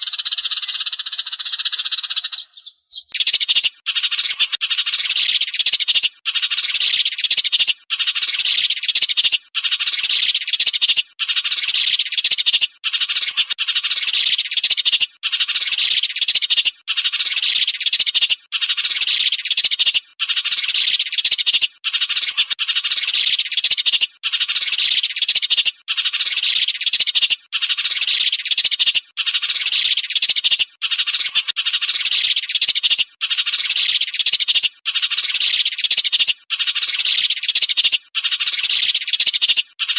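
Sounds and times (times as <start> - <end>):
recorded sparrow chattering: 0.0 - 39.9.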